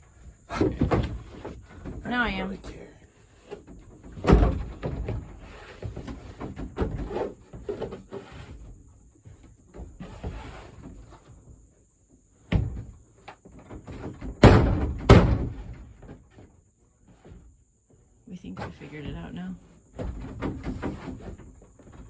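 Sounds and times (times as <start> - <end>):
plastic panels knocking and rattling: 0.5 - 2.5, 3.4 - 11.2, 12.5 - 16.5, 19.9 - 22.0
loud thumps: 14.4 - 15.8.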